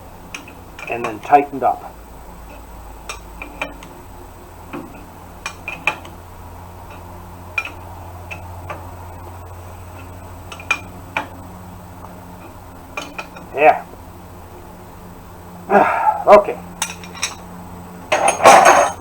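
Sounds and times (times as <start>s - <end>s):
low steady hum: 0.0s - 19.0s
hand tools clinking on steel: 0.3s - 1.6s, 12.4s - 13.6s, 16.8s - 17.5s, 18.1s - 19.0s.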